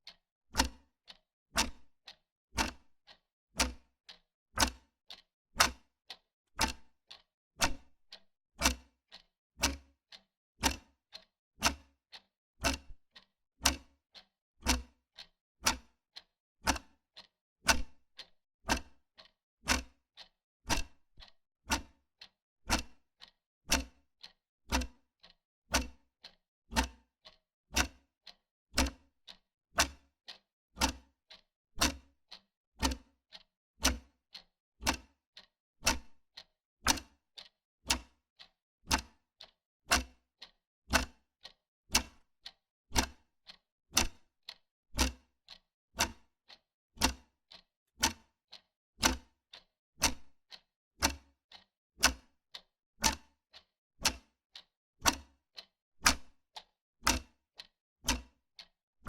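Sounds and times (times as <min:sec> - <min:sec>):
wall clock ticking: 0:02.6 - 0:02.8, 0:06.6 - 0:06.8, 0:10.6 - 0:11.8, 0:19.7 - 0:22.0, 0:25.7 - 0:31.1, 0:31.8 - 0:38.2, 0:38.9 - 0:41.1, 0:42.0 - 0:43.2, 0:44.0 - 0:47.6, 0:48.5 - 0:52.4, 0:53.0 - 0:54.3, 0:55.0 - 0:58.2.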